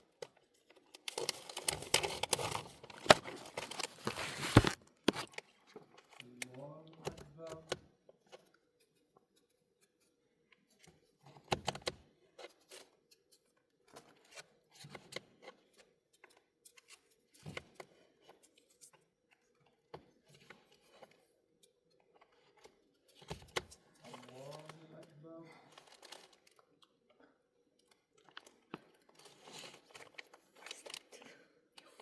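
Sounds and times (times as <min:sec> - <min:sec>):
small objects clicking and rustling: 0:00.7 - 0:05.3.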